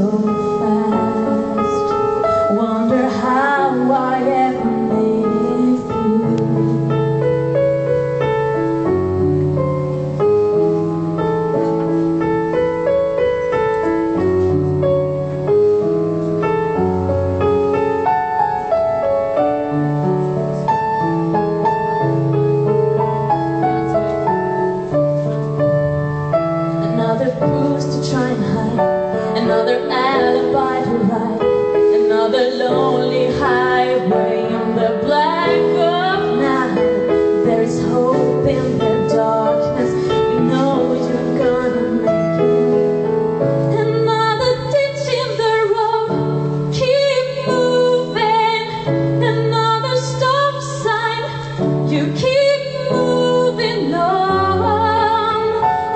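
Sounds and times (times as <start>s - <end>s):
woman singing a pop ballad: 0.0s - 7.3s, 26.8s - 42.7s, 43.7s - 55.9s
piano chords: 0.0s - 55.9s.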